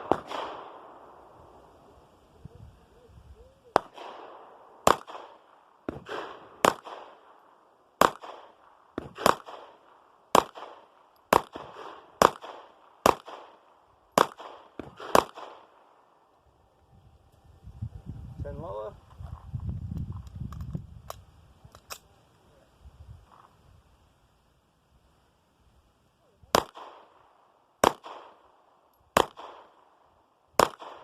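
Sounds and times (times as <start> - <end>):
fainter gunshots: 0.0 - 1.2, 3.7 - 7.4, 8.0 - 13.6, 14.2 - 15.9, 26.5 - 27.2, 30.6 - 31.0
pistol shots with echo: 0.0 - 1.4, 3.7 - 16.2, 26.5 - 31.0.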